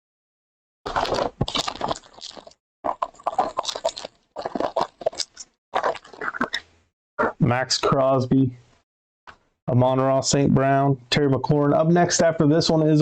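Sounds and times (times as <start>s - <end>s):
foil wrapper crinkling and tearing: 0.9s - 6.5s.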